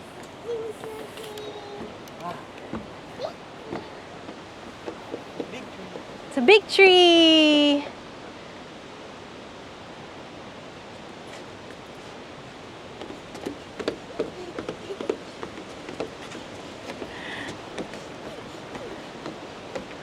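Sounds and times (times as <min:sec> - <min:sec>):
rushing background noise: 0:00.0 - 0:20.0
footsteps on a trail: 0:00.1 - 0:06.4, 0:12.8 - 0:20.0.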